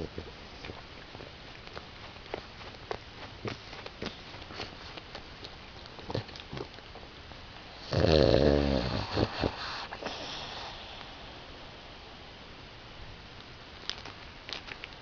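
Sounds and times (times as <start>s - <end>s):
dog snoring: 7.7s - 11.2s
short breaths: 9.0s - 12.2s.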